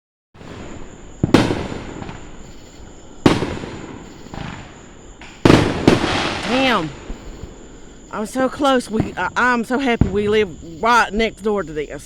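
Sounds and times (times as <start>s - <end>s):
fireworks loud bangs: 0.4s - 11.1s
faint fireworks pops: 0.4s - 11.3s.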